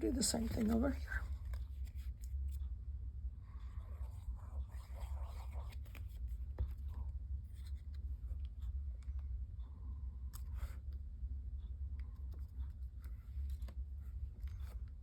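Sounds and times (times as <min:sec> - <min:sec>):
paper card rustling: 0:00.0 - 0:02.6, 0:04.1 - 0:08.0
steady low hum: 0:00.0 - 0:15.0.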